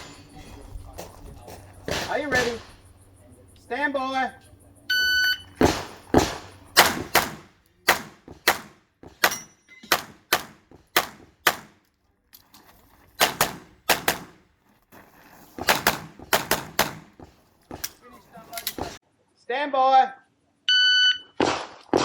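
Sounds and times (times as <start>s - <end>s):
handgun shots: 5.6s - 11.8s, 13.2s - 14.4s, 15.6s - 19.0s, 21.4s - 22.0s.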